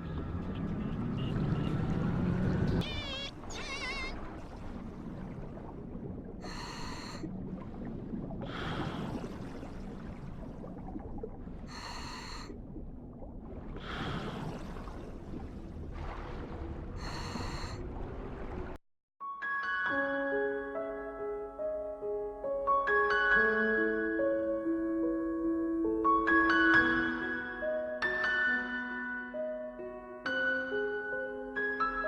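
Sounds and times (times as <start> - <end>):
low rumble: 4.2 - 18.8
underwater breathing-like hiss: 11.7 - 12.5.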